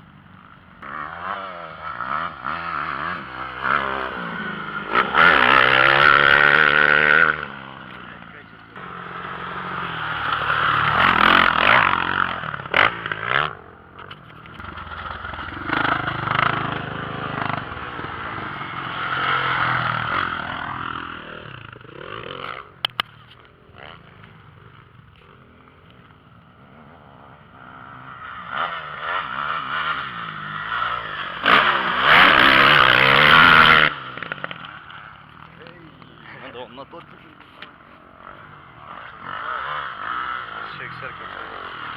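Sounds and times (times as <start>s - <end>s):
dirt bike engines revving: 0.0s - 41.9s
sharp clicks: 22.4s - 23.5s.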